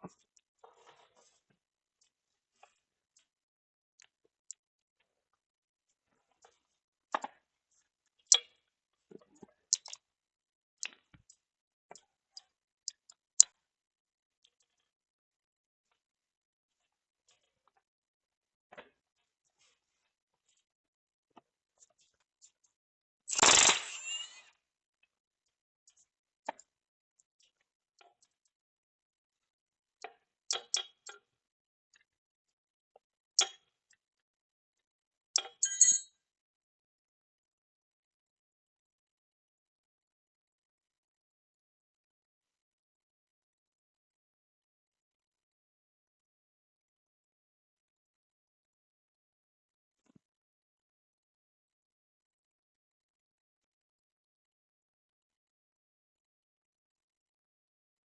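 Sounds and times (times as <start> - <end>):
metallic clinks of tools: 35.4 - 36.1.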